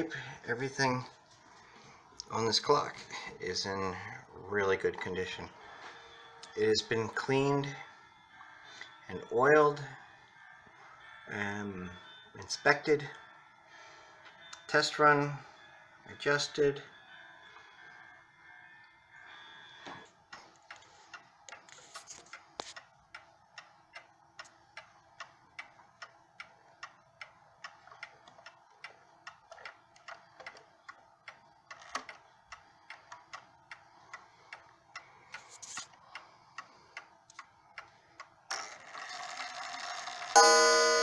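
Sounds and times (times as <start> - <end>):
clock ticking: 22.3 - 38.4.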